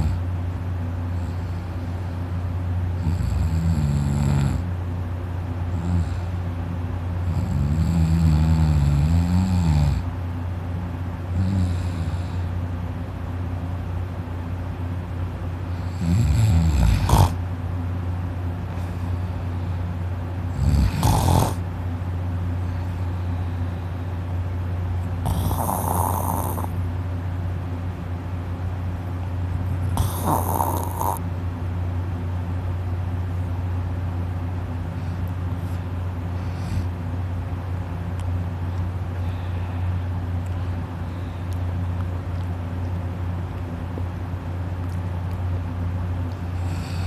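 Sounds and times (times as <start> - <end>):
man snoring loudly: 0.0 - 0.2, 3.0 - 4.7, 5.7 - 6.4, 7.2 - 10.1, 11.3 - 12.4, 15.8 - 17.4, 20.5 - 21.6, 25.2 - 26.8, 29.9 - 31.2, 46.6 - 47.0
steady low hum: 0.0 - 47.0.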